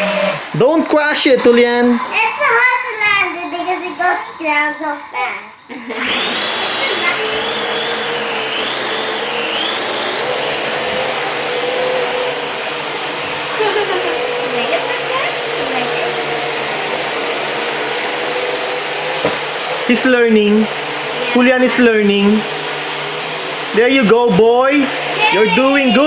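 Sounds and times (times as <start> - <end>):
toy drone propellers whirring: 6.0 - 26.0.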